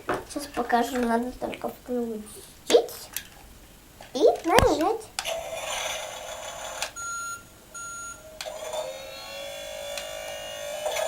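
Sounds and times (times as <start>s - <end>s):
toy steady electronic tone: 6.4s - 11.0s.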